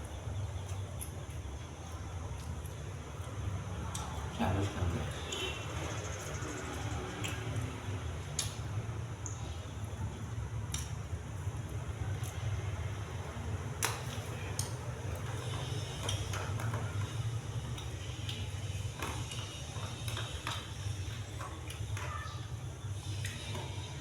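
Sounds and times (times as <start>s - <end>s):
chewing clicks: 0.1s - 9.5s, 10.7s - 11.1s, 13.8s - 22.4s.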